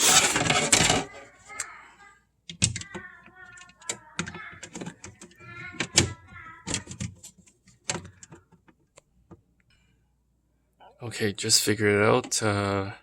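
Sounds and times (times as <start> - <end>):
plastic squeaking on plastic: 0.0 - 1.3, 2.7 - 8.1.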